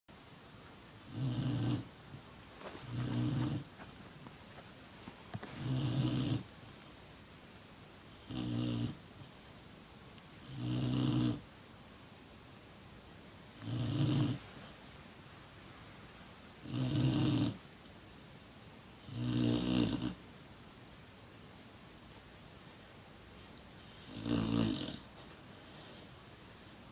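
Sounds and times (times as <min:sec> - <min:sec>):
dog snoring: 0:01.0 - 0:01.9, 0:02.7 - 0:03.9, 0:05.4 - 0:06.5, 0:08.1 - 0:09.0, 0:10.4 - 0:11.4, 0:13.6 - 0:14.4, 0:16.6 - 0:17.6, 0:19.0 - 0:20.2, 0:23.8 - 0:26.2.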